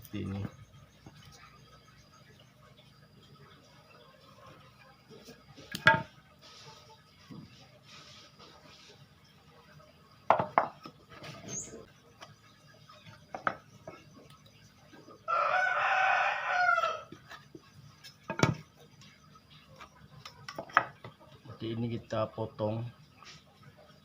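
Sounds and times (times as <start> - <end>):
rooster crowing: 15.2 - 17.2.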